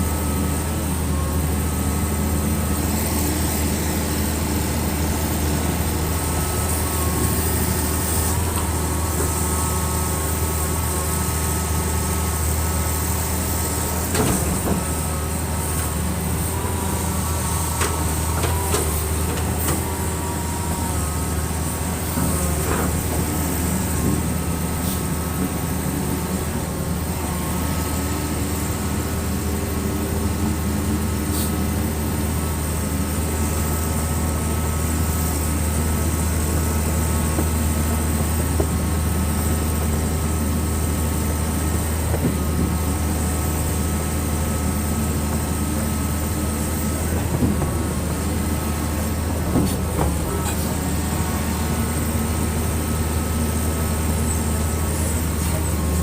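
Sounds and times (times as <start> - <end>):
excavator diesel engine humming: 0.0 - 56.0.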